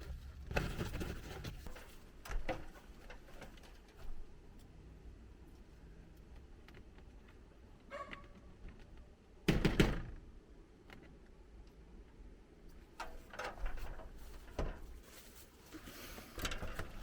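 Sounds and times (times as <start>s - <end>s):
things knocking and clattering: 13.0s - 15.0s.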